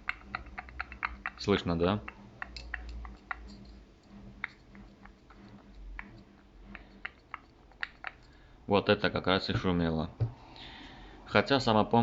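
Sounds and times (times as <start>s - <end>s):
water pump shaft clicking: 0.0s - 8.4s.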